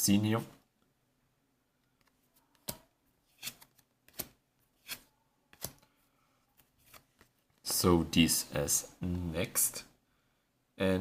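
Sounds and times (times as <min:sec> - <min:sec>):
cards snapping and rustling: 0:02.0 - 0:05.9.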